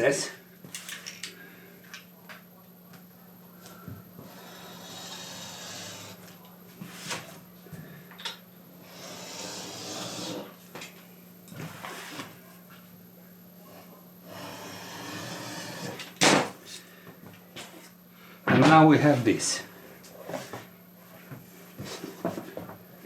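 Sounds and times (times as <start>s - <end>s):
blade cutting leather: 8.9s - 10.5s.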